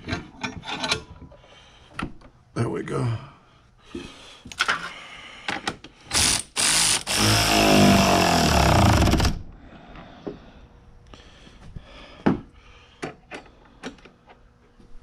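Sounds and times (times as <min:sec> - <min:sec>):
small motor running: 0:06.1 - 0:09.4.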